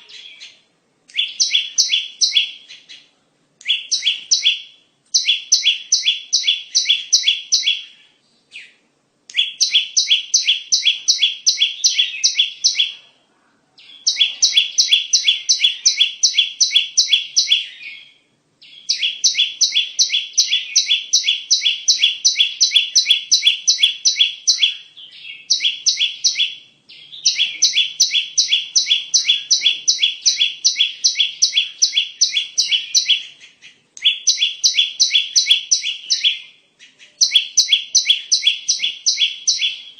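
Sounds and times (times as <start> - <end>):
bird chirping high notes: 13.9 - 33.4, 37.2 - 39.9.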